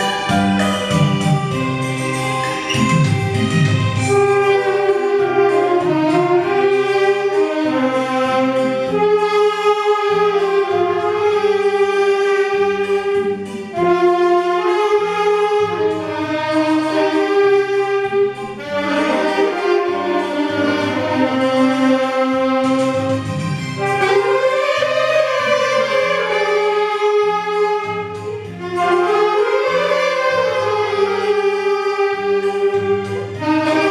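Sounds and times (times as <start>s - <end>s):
saxophone ensemble playing: 0.0s - 33.9s.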